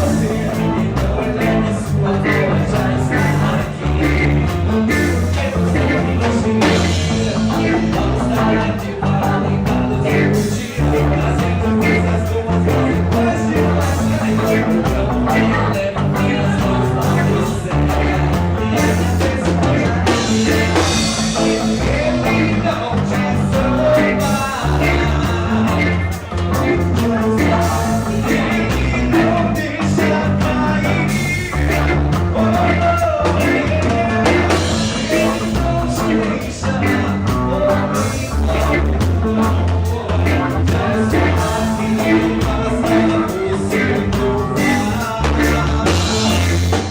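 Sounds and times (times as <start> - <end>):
lead voice singing: 0.0 - 46.9
live band playing: 0.0 - 46.9.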